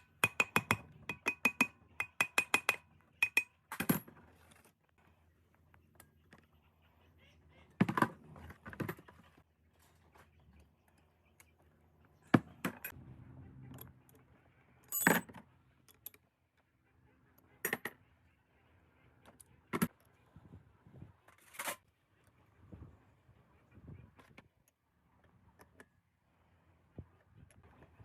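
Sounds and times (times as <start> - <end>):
small metal parts clinking: 14.9 - 15.3.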